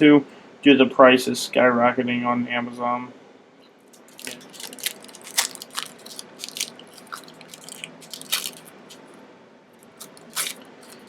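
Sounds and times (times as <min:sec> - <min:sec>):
wax paper crinkling and peeling: 0:04.0 - 0:09.1, 0:09.8 - 0:11.0.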